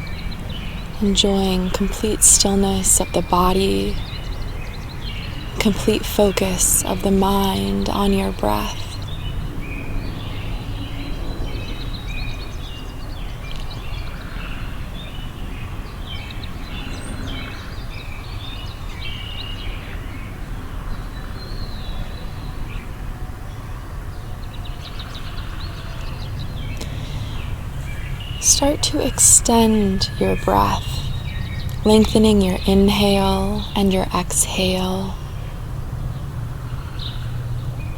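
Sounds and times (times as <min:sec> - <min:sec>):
low background rumble: 0:00.0 - 0:15.6, 0:24.4 - 0:37.9
songbirds chirping and warbling: 0:00.0 - 0:37.9.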